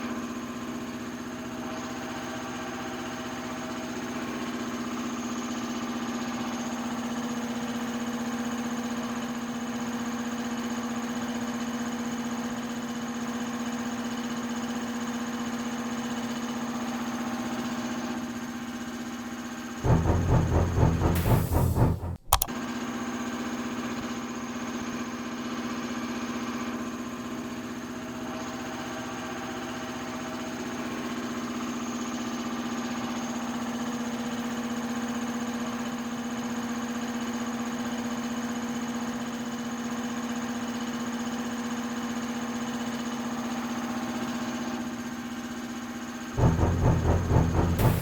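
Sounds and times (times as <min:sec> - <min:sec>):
rough low running machine: 0:19.8 - 0:22.5, 0:46.4 - 0:48.0.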